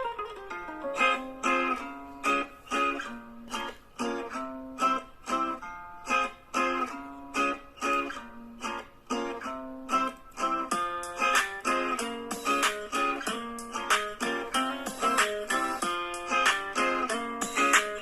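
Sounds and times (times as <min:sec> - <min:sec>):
plucked guitar chords: 0:00.0 - 0:18.0.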